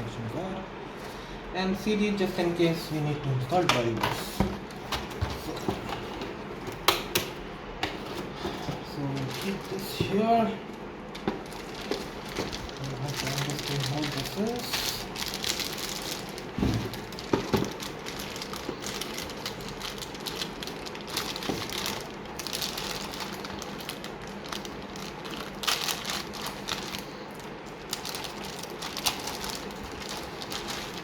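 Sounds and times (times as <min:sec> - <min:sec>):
packaging rustling and crinkling: 0:08.0 - 0:31.0.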